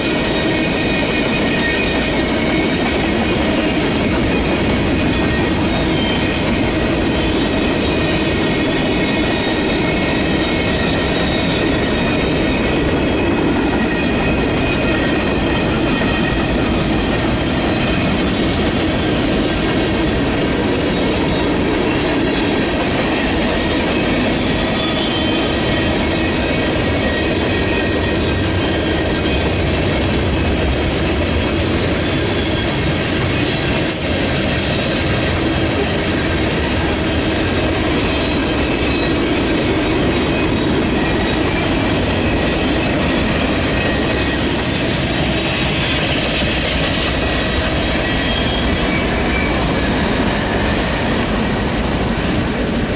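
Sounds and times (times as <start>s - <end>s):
high wheel squeal: 0.0s - 51.5s
train wheels rumbling and clacking: 0.0s - 52.9s.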